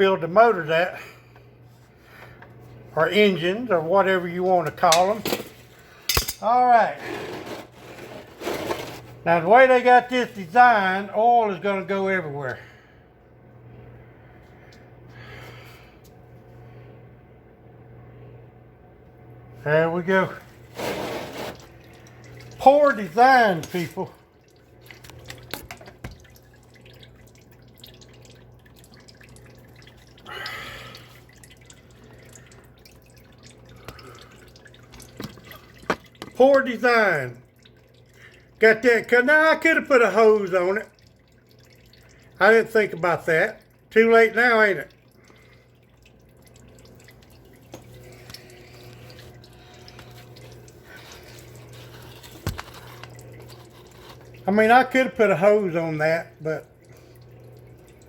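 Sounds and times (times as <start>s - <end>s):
low steady hum: 0.0s - 58.0s
oil dripping into drain pan: 21.6s - 55.2s, 56.0s - 58.0s.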